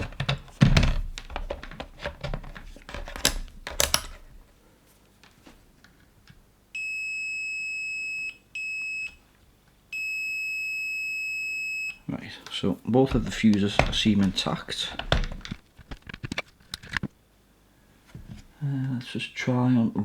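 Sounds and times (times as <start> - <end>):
multimeter continuity beep: 6.8 - 9.2, 9.9 - 12.0.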